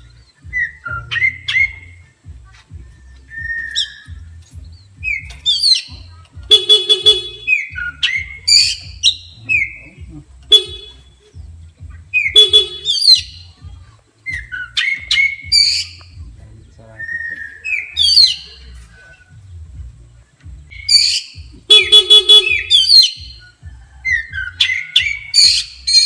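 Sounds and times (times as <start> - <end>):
bird singing loud whistles: 0.0 - 11.3, 12.1 - 13.6, 14.3 - 16.2, 17.0 - 19.4, 20.6 - 26.0
buzzy horn honking: 4.1 - 13.8, 18.0 - 24.2.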